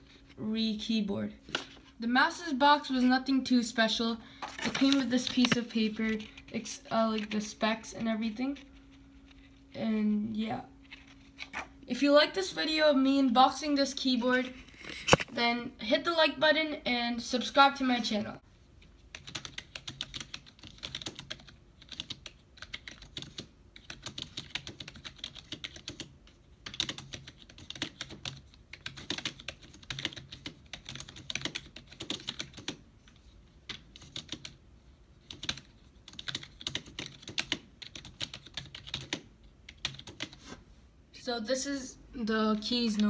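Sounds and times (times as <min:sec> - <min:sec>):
fast keyboard typing: 0:04.6 - 0:08.6, 0:19.1 - 0:34.6, 0:35.2 - 0:40.5.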